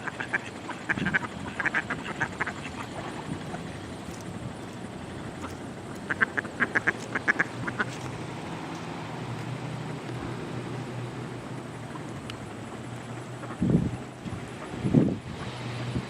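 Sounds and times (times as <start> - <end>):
ducks quacking: 0.0 - 9.0, 11.8 - 14.8.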